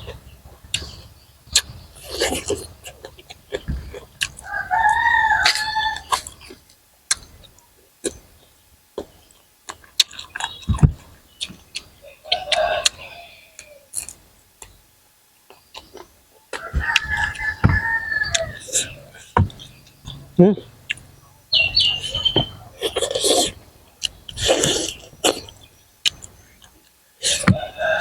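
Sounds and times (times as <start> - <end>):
rooster crowing: 4.4 - 6.2, 12.0 - 13.9, 16.6 - 19.2, 27.2 - 28.0.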